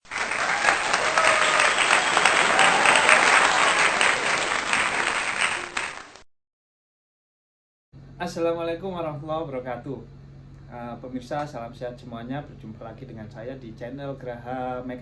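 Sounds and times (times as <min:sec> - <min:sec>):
crowd applauding: 0:00.0 - 0:06.3.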